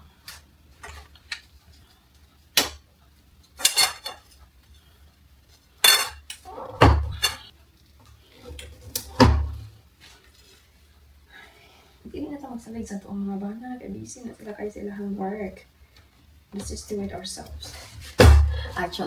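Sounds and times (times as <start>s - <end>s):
metal rack parts clanking: 3.6s - 4.2s, 5.8s - 7.5s
dull thud: 18.2s - 18.6s.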